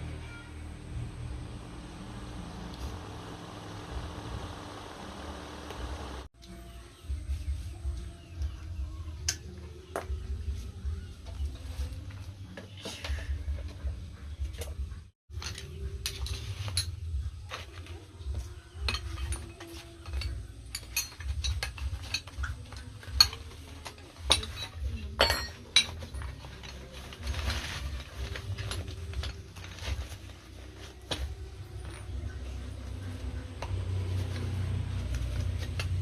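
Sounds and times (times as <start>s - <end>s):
low steady hum: 0.0s - 6.3s
metal parts clicking and clinking: 15.3s - 17.2s, 18.8s - 30.2s.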